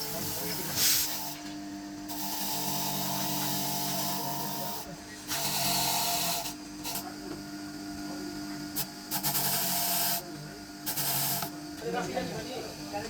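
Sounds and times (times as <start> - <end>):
steady machine hum: 0.0 - 13.0.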